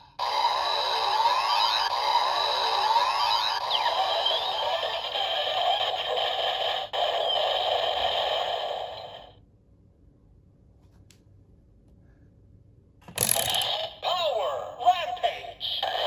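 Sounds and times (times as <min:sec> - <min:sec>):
toy siren-like electronic effects: 0:00.0 - 0:09.0, 0:13.2 - 0:14.1.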